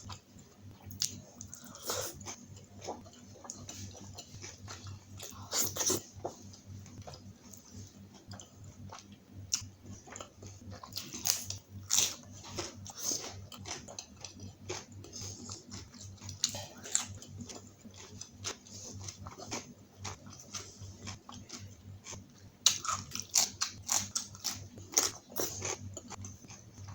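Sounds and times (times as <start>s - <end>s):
person chewing and biting: 0.9s - 26.9s
food crunches: 15.7s - 26.9s.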